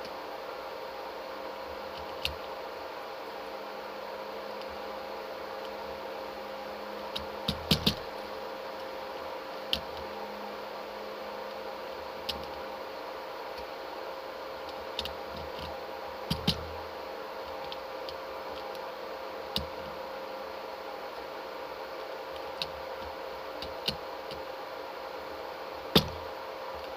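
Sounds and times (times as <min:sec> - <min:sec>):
mechanical hum: 0:00.0 - 0:26.9
sharp clicks and knocks: 0:07.1 - 0:08.2, 0:14.7 - 0:16.8, 0:25.9 - 0:26.9.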